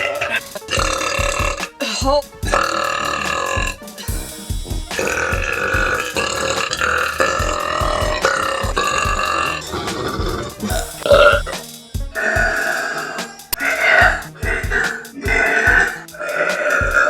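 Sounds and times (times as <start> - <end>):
background music with steady beat: 0.0 - 17.0.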